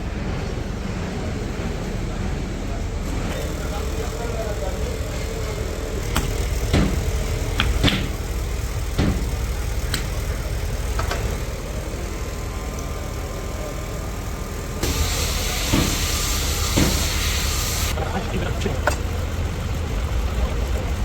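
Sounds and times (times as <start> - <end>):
sharp knocks and clicks: 6.0 - 8.3, 8.9 - 10.2
even hiss: 14.8 - 18.2.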